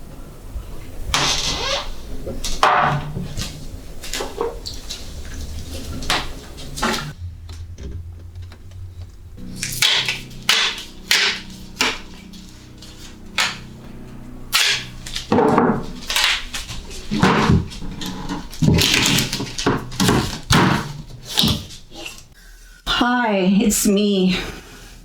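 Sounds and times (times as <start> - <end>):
low steady hum: 0.0 - 22.4
sharp knocks and clicks: 6.0 - 14.0.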